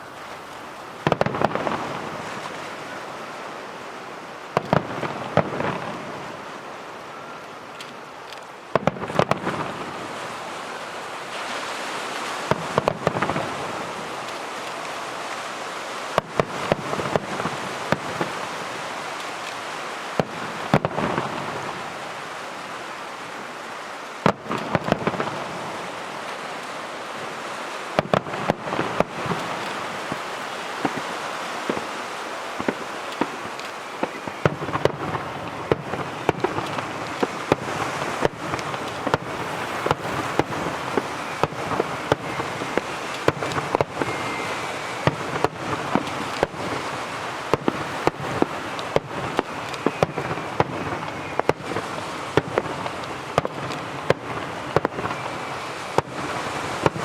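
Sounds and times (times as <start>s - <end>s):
crackling hiss: 0.0s - 57.0s
firework shells bursting: 28.0s - 57.0s.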